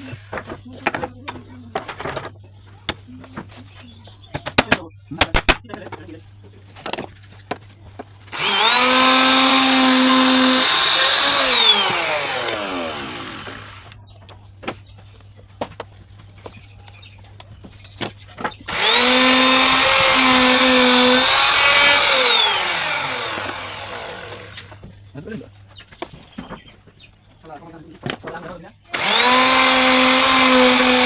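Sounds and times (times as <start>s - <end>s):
power tool cutting wood: 8.3s - 14.0s, 18.6s - 24.8s, 28.9s - 31.0s.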